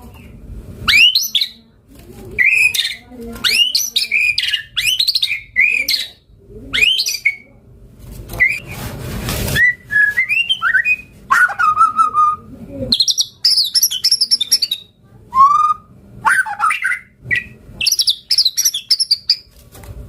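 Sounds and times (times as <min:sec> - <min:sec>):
bird singing upswept whistles: 0:00.9 - 0:01.6, 0:06.8 - 0:07.4, 0:09.6 - 0:19.4
harsh noisy bird call: 0:13.0 - 0:19.5.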